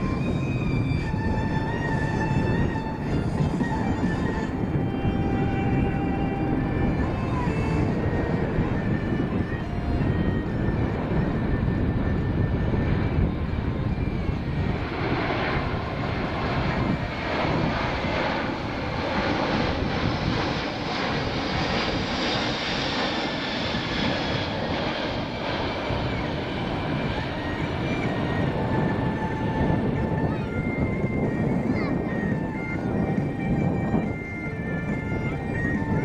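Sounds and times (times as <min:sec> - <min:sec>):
jet engine rumble: 0:00.0 - 0:36.0.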